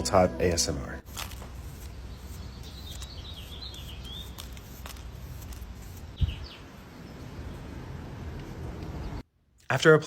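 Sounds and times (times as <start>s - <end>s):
birds chirping: 1.9s - 4.5s, 6.2s - 7.8s.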